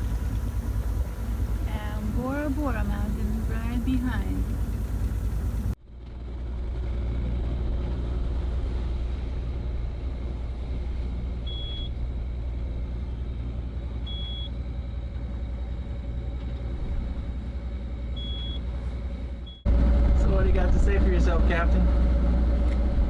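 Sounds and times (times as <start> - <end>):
diesel engine rumbling: 0.0 - 5.8.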